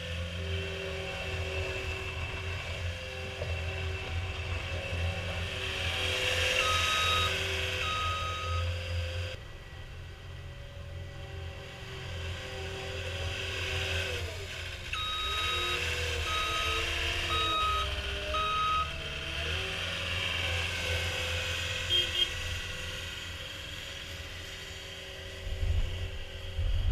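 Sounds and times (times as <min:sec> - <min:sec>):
diesel engine running: 0:00.0 - 0:26.9
backup alarm beeping: 0:06.6 - 0:08.7, 0:15.0 - 0:19.0.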